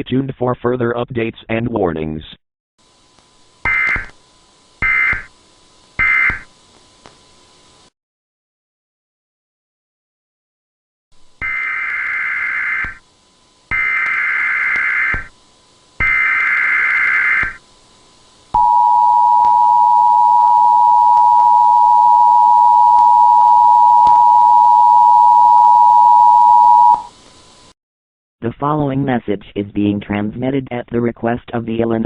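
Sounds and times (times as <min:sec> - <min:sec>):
digital data noise bursts: 0:16.0 - 0:17.6
two-tone attention signal: 0:18.6 - 0:27.1.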